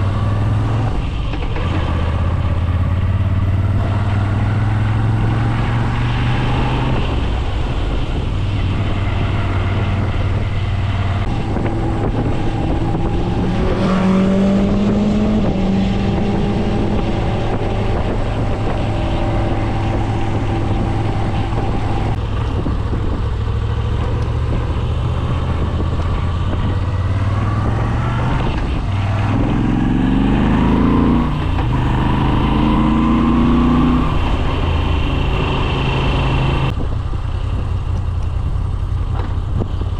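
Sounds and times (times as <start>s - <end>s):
motorcycle engine running: 14.6s - 27.8s.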